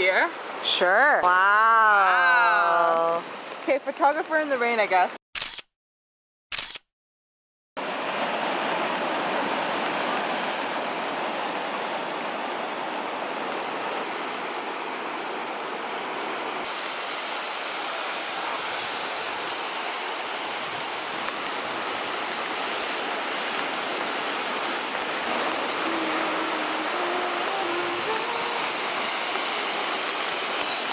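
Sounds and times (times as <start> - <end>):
waterfall pouring onto rocks: 16.6 - 30.9.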